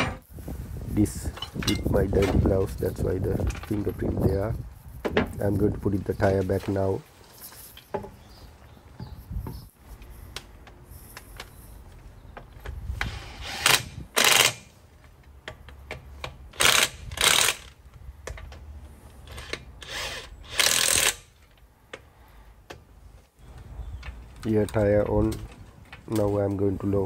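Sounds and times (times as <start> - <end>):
power wrench bursts: 13.0 - 14.8, 16.5 - 17.8, 19.2 - 21.4.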